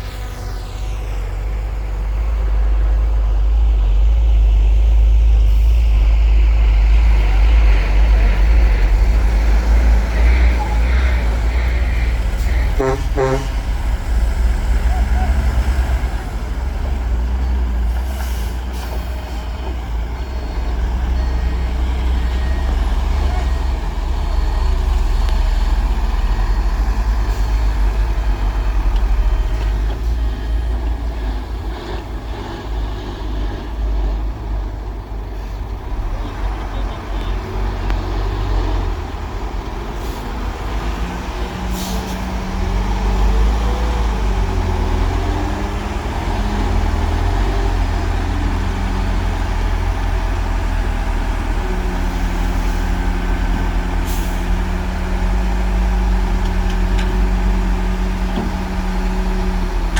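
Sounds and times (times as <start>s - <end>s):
diesel machinery engine rumble: 0.0s - 59.9s.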